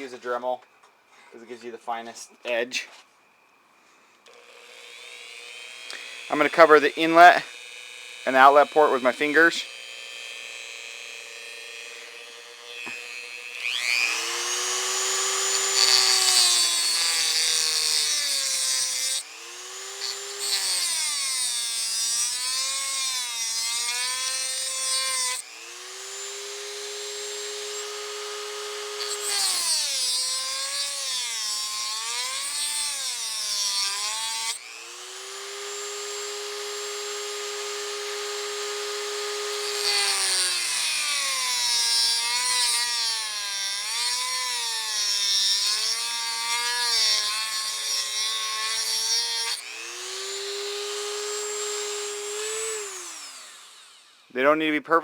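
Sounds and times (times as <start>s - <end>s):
rotary tool motor whine: 4.2s - 54.3s
gritty hiss of metal cutting: 4.6s - 9.7s.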